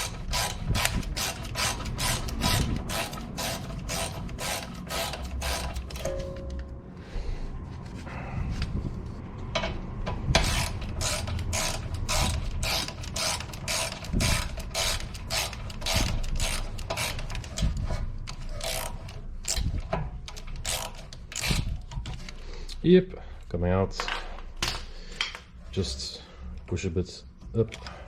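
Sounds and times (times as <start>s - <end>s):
ratchet clicking: 0.0s - 6.1s, 10.3s - 22.8s.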